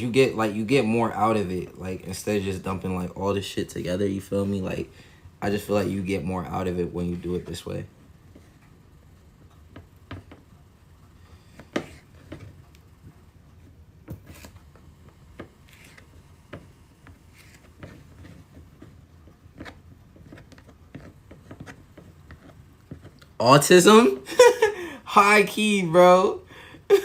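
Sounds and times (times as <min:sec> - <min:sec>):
faint knife scraping: 0:15.6 - 0:23.2.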